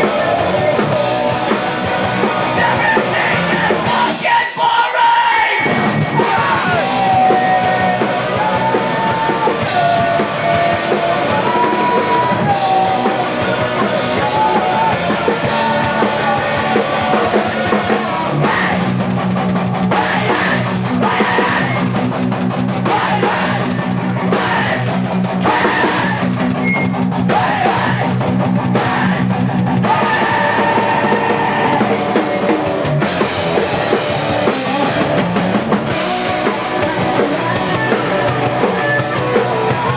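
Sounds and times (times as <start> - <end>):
rock band playing live: 0.0 - 39.9.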